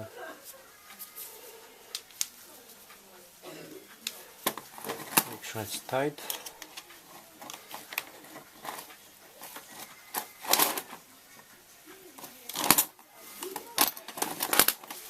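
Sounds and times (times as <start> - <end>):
plastic and metal parts clicking: 4.0 - 5.4, 6.2 - 11.0, 12.2 - 15.0.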